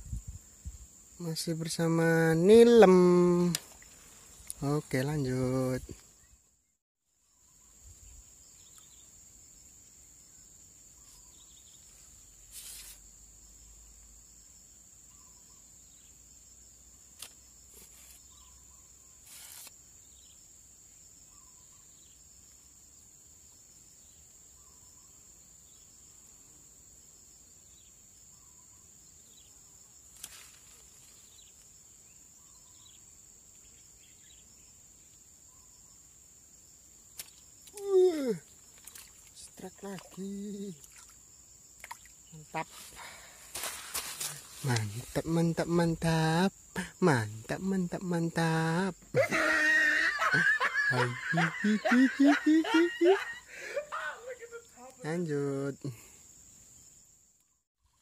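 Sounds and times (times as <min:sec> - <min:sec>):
high-pitched insect trill: 0:00.0 - 0:06.4, 0:07.2 - 0:58.0
brief rustles: 0:19.2 - 0:19.8, 0:42.8 - 0:45.0.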